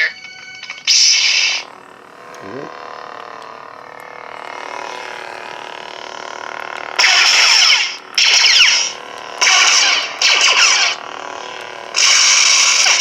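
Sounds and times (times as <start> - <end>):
lightsaber effect bursts: 0.0 - 1.8, 6.9 - 13.0
lightsaber blade hum: 0.0 - 13.0.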